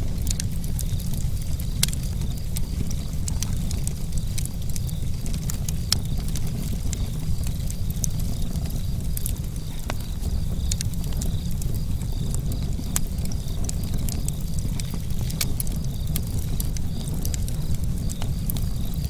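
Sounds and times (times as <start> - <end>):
campfire crackling and popping: 0.0 - 19.0
low fire rumble: 0.0 - 19.0.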